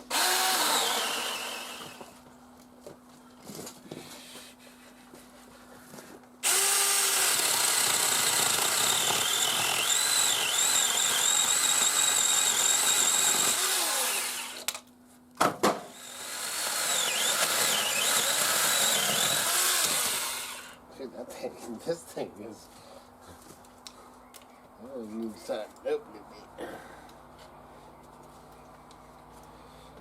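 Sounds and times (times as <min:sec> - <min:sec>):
electric pole saw whining: 0:00.0 - 0:02.2, 0:06.4 - 0:14.8, 0:15.9 - 0:20.8.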